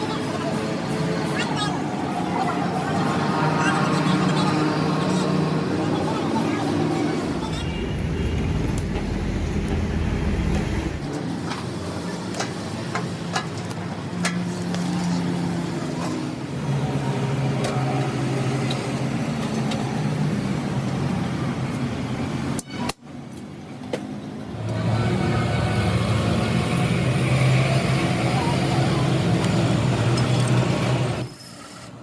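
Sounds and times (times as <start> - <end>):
machinery humming: 6.0 - 11.1.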